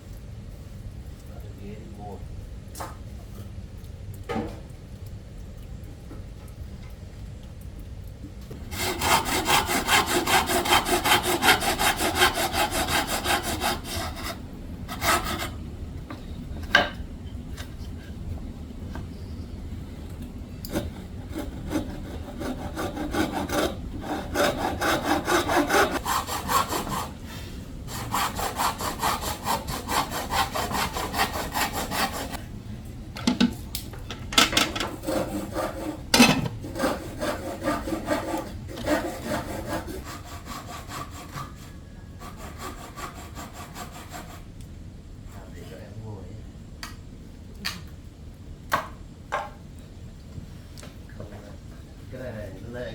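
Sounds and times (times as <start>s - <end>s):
handsaw cutting wood: 8.7s - 15.6s, 20.7s - 27.2s, 27.9s - 32.4s, 34.9s - 36.0s, 36.6s - 44.5s.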